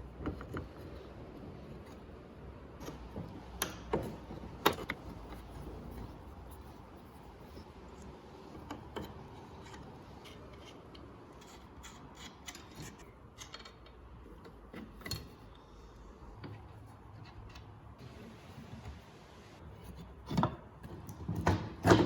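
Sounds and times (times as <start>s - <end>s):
light clicks and ticks of tools: 7.9s - 18.0s.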